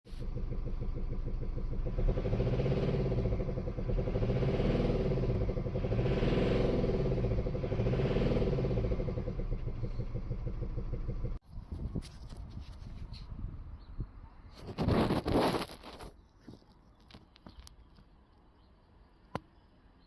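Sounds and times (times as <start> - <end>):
diesel engine knocking: 0.1 - 11.4.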